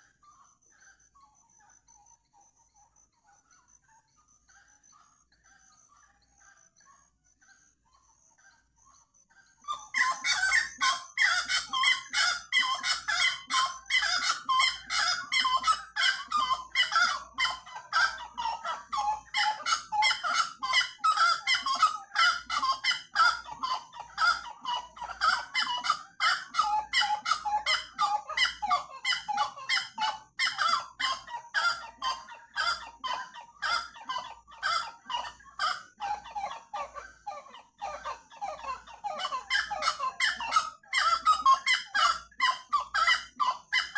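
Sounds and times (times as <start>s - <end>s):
wood-rail calling rapidly: 9.6s - 43.9s.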